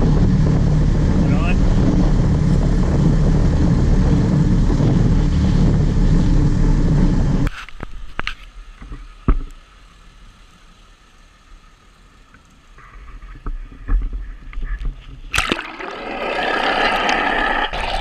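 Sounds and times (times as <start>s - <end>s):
boat engine running: 0.0s - 7.5s.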